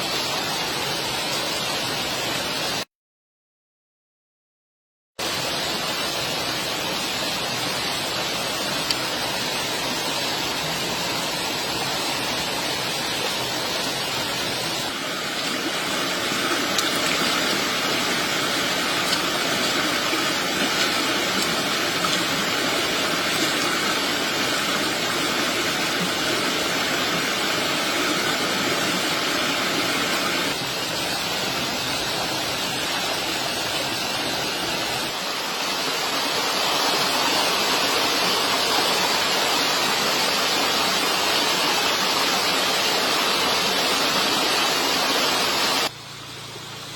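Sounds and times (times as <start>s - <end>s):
steady rushing noise: 7.8s - 32.6s.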